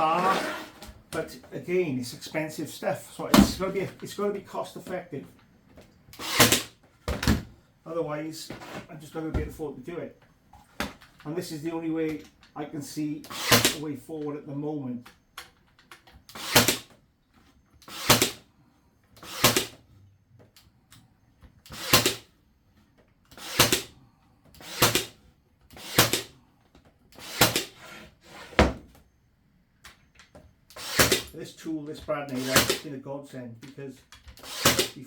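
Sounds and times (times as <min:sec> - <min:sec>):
brad nailer firing into wood: 0:06.2 - 0:07.4, 0:13.3 - 0:13.8, 0:16.3 - 0:16.9, 0:17.8 - 0:18.4, 0:19.2 - 0:19.8, 0:21.7 - 0:22.3, 0:23.4 - 0:23.9, 0:24.6 - 0:25.2, 0:25.8 - 0:26.3, 0:27.2 - 0:27.8, 0:30.7 - 0:31.4, 0:32.3 - 0:32.8, 0:34.4 - 0:35.0.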